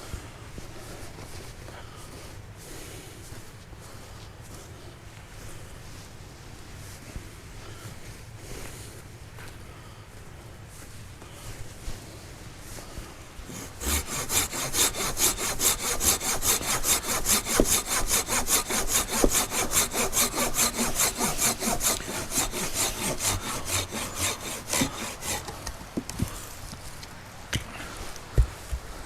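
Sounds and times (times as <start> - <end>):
hand saw cutting wood: 13.4 - 26.5.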